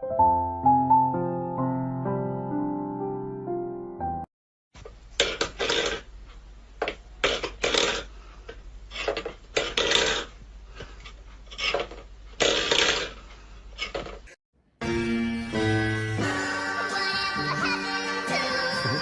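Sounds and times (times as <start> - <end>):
low electrical hum: 4.8 - 14.3.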